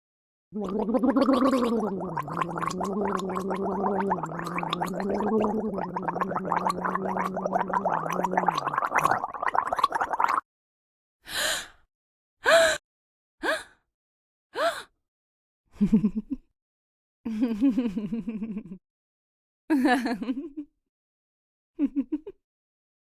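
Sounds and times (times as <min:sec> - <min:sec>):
woman gargling: 0:00.6 - 0:10.4.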